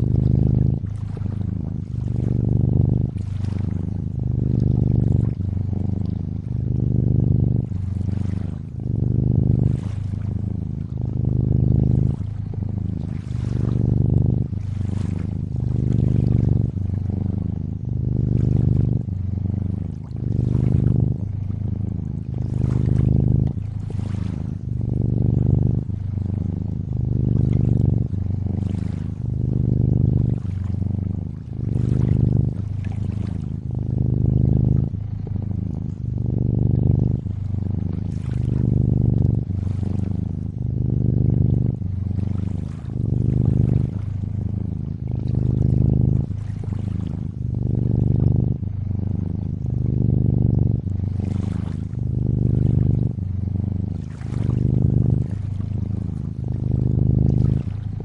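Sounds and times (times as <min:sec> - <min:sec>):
cat purring: 0:00.0 - 0:58.0.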